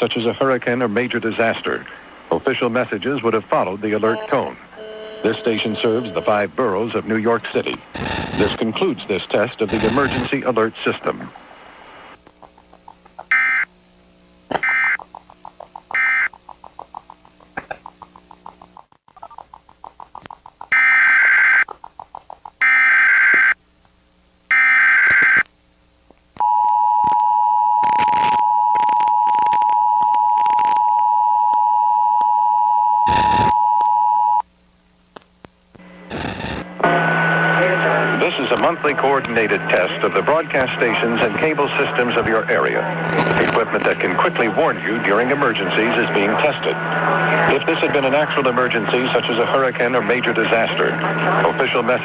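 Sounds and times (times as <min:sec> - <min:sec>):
two-tone attention signal: 0:04.0 - 0:06.4
short bursts of noise: 0:04.0 - 0:06.5, 0:07.8 - 0:08.6, 0:09.6 - 0:10.4, 0:33.1 - 0:33.6, 0:36.0 - 0:38.8, 0:42.8 - 0:44.2
short digital data bursts: 0:07.9 - 0:08.6, 0:09.7 - 0:10.3, 0:14.6 - 0:15.0, 0:33.1 - 0:33.6, 0:36.1 - 0:36.7
rapid ticking: 0:12.2 - 0:13.5, 0:14.7 - 0:22.7.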